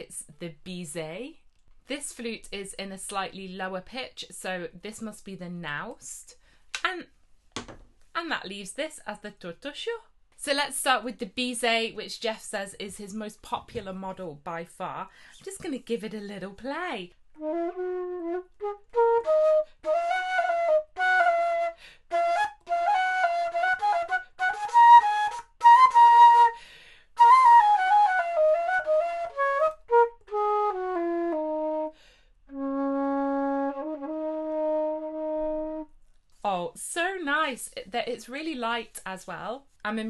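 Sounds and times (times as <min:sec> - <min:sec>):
flute playing quick runs: 0:17.4 - 0:26.6
player breathing: 0:26.6 - 0:27.1, 0:32.0 - 0:32.4.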